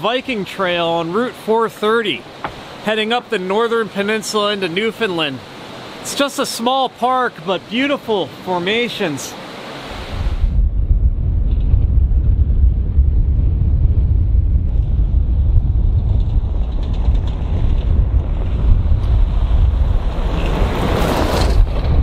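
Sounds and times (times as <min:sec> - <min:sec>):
vehicle engine and road rumble: 0:10.6 - 0:22.0.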